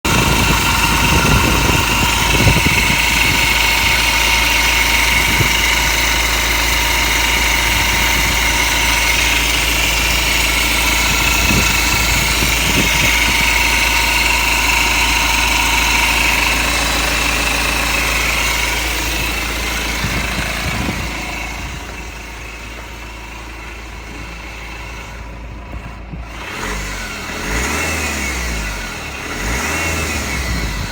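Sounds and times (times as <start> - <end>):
diesel engine running: 0.0 - 30.9
high-pitched whine: 0.1 - 23.0.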